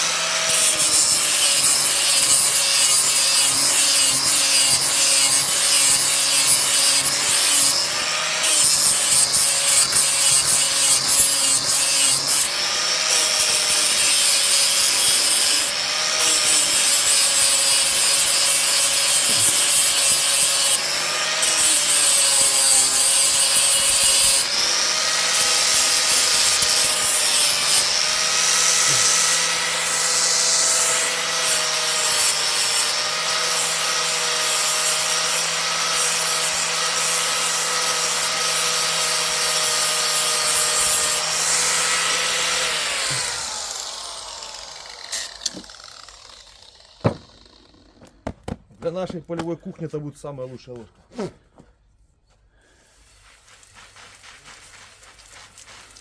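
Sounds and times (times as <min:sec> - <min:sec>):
tool rasping wood: 0:00.0 - 0:48.9, 0:52.5 - 0:56.0.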